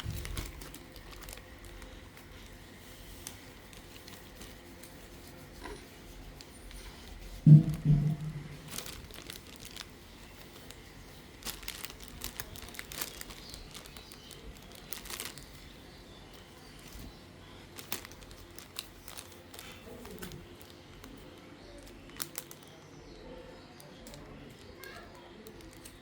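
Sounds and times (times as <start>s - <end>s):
modelling clay crinkling: 0.0s - 26.0s
low thump: 7.5s - 8.8s.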